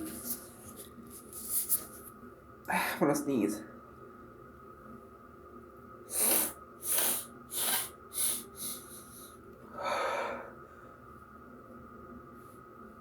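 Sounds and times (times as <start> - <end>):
man sniffing and snorting: 6.1 - 9.1
breathy exhale: 6.1 - 10.5.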